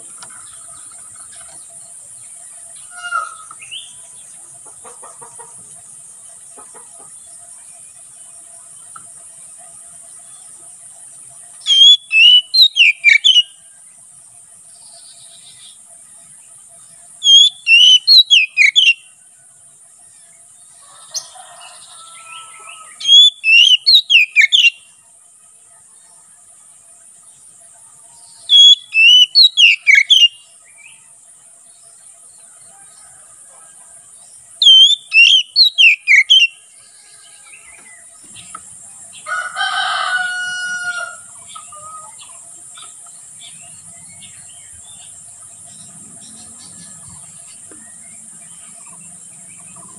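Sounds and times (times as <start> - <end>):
bird singing whistled notes: 1.3 - 4.2, 11.4 - 13.7, 17.0 - 19.2, 22.4 - 25.0, 28.3 - 31.0, 34.6 - 38.6
lower longer bird call: 11.6 - 13.5, 17.2 - 19.0, 20.8 - 24.8, 28.4 - 30.4, 34.6 - 37.7.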